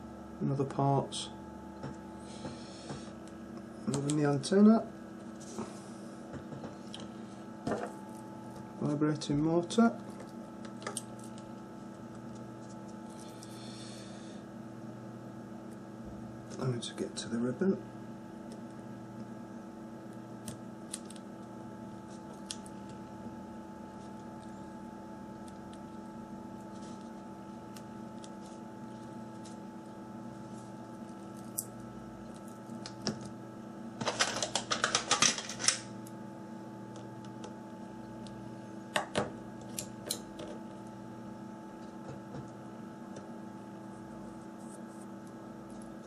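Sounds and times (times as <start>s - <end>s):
steady background hum: 0.0s - 46.0s.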